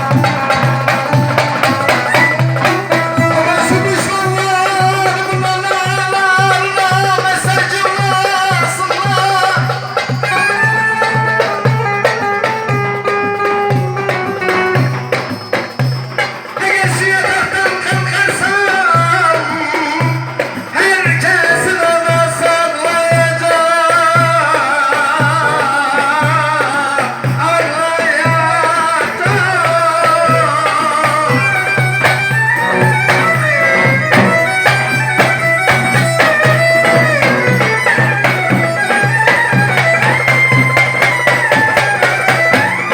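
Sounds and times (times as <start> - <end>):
low pulsing drum beat: 0.0 - 15.5, 29.2 - 42.9
ornamented folk melody: 0.0 - 17.9, 24.7 - 42.9.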